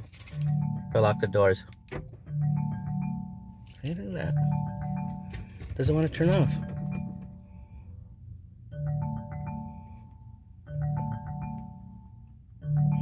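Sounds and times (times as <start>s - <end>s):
marimba-like ringtone chiming: 2.3s - 7.7s, 8.8s - 13.0s.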